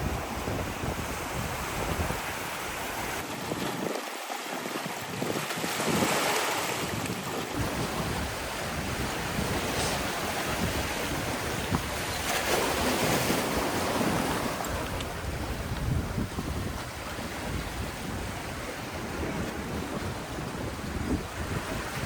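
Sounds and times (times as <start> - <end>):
surf washing onto shore: 0.0 - 22.0
wind buffeting microphone: 0.0 - 22.0.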